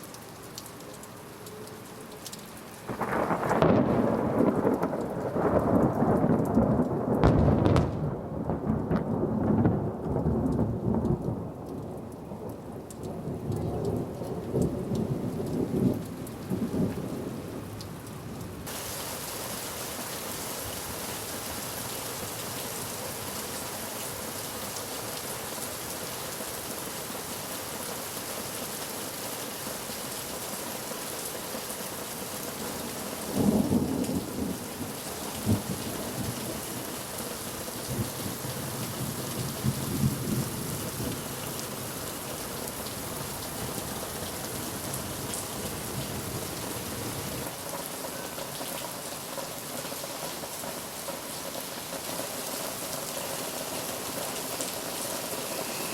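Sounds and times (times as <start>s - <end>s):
steady rain: 0.0s - 55.9s
thunder clap and rumbling: 2.9s - 11.7s, 35.4s - 36.6s, 37.9s - 41.2s.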